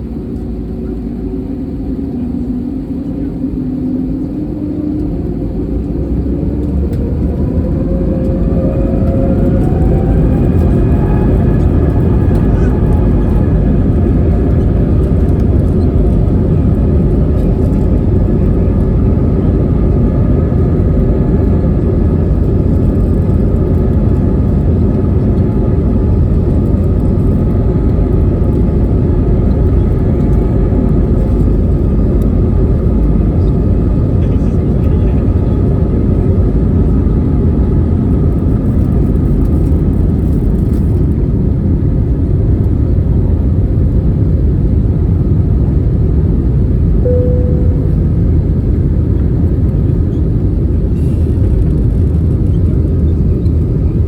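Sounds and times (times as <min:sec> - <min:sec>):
airplane cabin engine rumble: 0:00.0 - 0:54.0
faint steady tones: 0:47.0 - 0:48.8.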